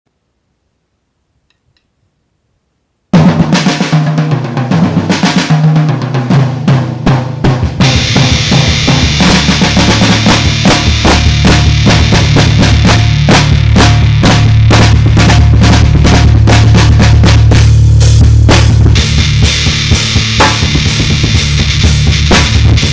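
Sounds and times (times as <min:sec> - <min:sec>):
drum kit: 0:03.1 - 0:22.9
band playing: 0:07.7 - 0:22.9
low bass line: 0:07.8 - 0:22.9.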